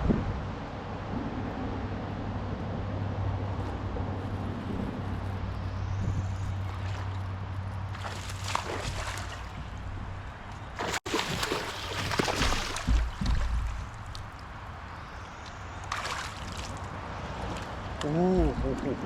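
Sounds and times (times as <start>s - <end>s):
water sloshing against kayak: 6.3s - 19.0s
dull knocks: 10.8s - 14.5s.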